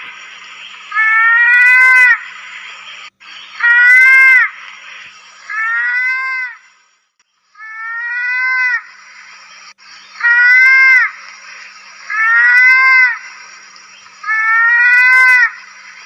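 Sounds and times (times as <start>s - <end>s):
steady high hiss: 0.0s - 16.0s
mouse-deer crying calls: 0.9s - 2.2s, 3.5s - 4.5s, 5.5s - 6.6s, 7.6s - 8.9s, 10.2s - 11.2s, 12.1s - 13.2s, 14.2s - 15.7s.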